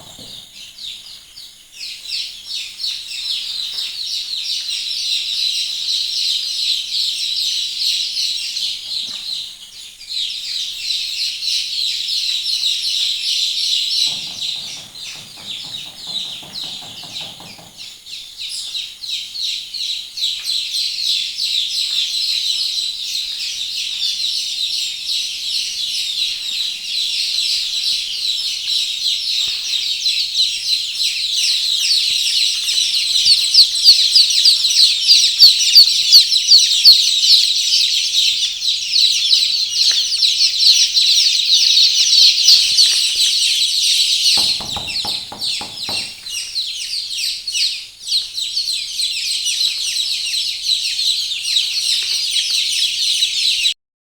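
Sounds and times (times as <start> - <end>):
chicks peeping: 0.0 - 53.7.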